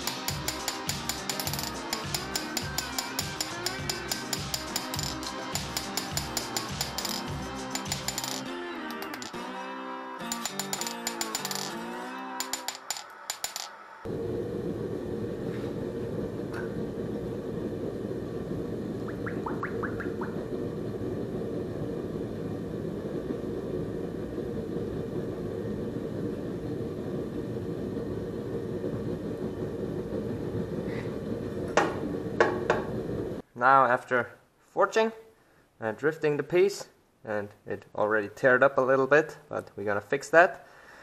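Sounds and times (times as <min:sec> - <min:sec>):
gas forge burner roaring: 0:00.0 - 0:09.4, 0:10.2 - 0:33.4.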